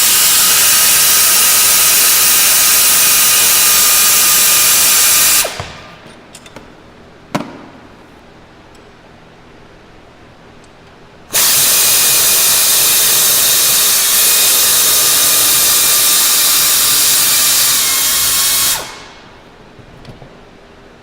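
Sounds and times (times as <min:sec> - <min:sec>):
air ratchet hissing: 0:00.0 - 0:05.6, 0:11.3 - 0:19.2.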